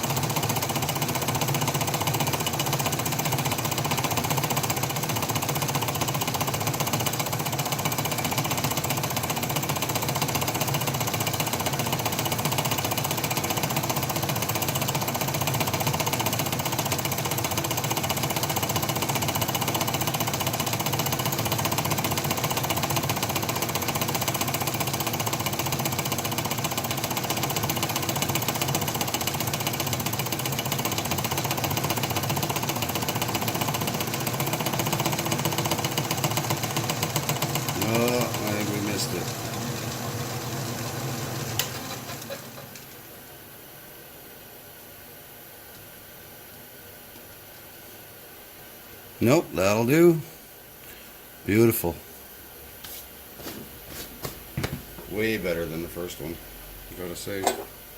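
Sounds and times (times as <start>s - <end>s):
lathe motor hum: 0.0s - 42.9s.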